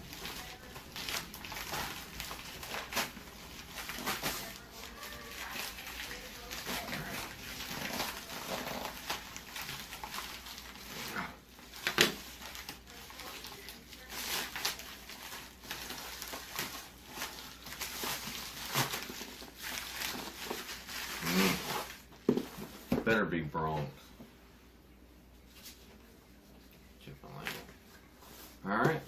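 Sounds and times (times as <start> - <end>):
packaging rustling and clicking: 11.7 - 22.6.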